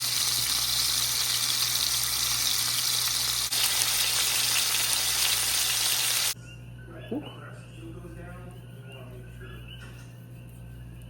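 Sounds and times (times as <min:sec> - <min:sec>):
fish sizzling in a pan: 0:00.0 - 0:06.4.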